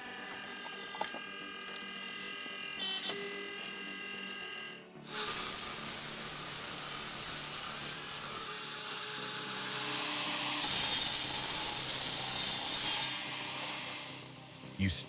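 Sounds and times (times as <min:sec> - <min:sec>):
motor whining: 0:00.0 - 0:14.0
machine hissing: 0:05.1 - 0:14.3.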